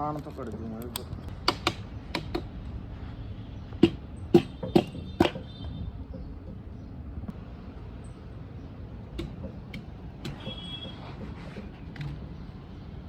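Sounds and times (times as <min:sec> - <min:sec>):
sharp clicks and taps: 0:00.1 - 0:02.5, 0:09.1 - 0:10.5.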